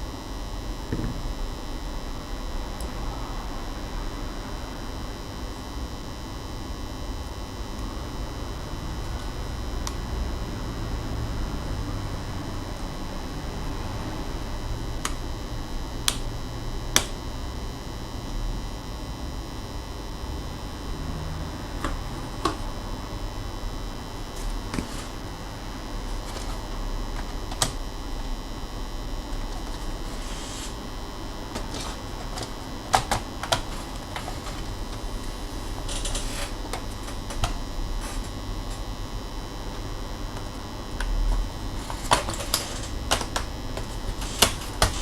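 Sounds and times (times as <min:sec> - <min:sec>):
steady background hum: 0:00.0 - 0:45.0
tools clicking and tapping on laptop: 0:16.0 - 0:16.3, 0:16.9 - 0:17.2, 0:26.1 - 0:27.8, 0:31.5 - 0:38.8, 0:41.8 - 0:45.0.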